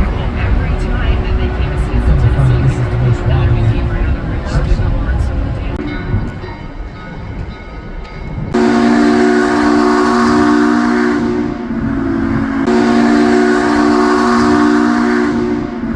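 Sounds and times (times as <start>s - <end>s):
steam locomotive chime whistle: 8.5s - 15.9s.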